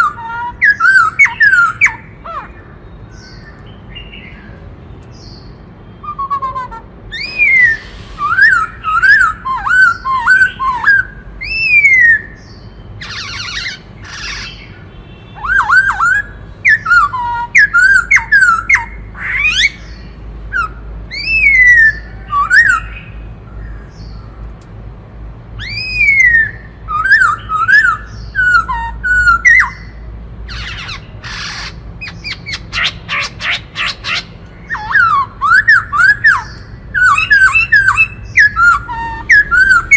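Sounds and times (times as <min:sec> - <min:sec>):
bird whistling song: 0:00.0 - 0:24.3, 0:25.6 - 0:39.9
harsh rasping bird notes: 0:04.2 - 0:12.1, 0:25.6 - 0:39.9.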